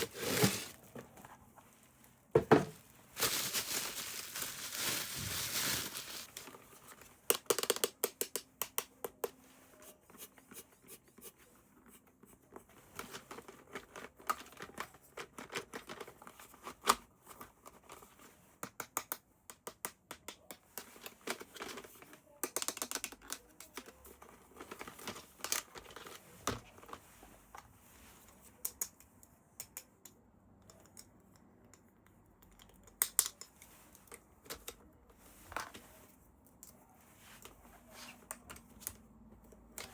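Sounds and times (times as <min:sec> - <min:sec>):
packaging crinkling: 0:00.0 - 0:00.8, 0:02.8 - 0:06.6
plastic parts clicking and snipping: 0:07.3 - 0:08.9, 0:18.6 - 0:24.0.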